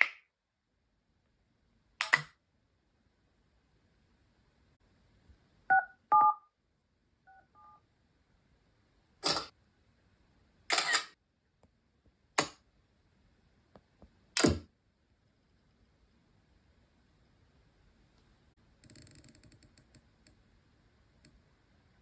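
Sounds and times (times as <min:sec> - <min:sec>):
phone keypad dialing tones: 0:05.7 - 0:06.4.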